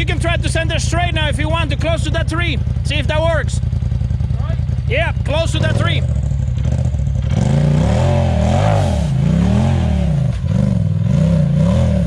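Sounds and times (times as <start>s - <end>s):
engine revving: 4.2s - 12.0s.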